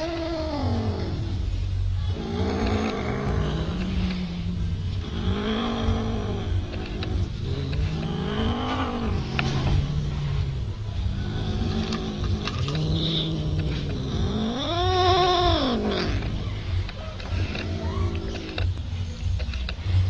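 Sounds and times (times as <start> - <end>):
low rumble: 0.0 - 20.0
cat meowing: 12.7 - 16.4.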